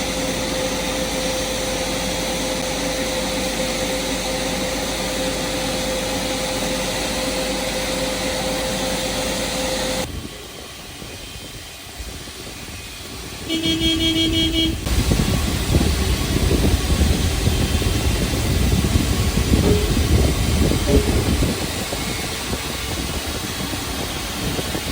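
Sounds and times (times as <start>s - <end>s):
ground air starter rush and whine: 0.0s - 24.9s
low engine rumble: 13.4s - 24.7s
short horn-like tone: 13.5s - 14.9s.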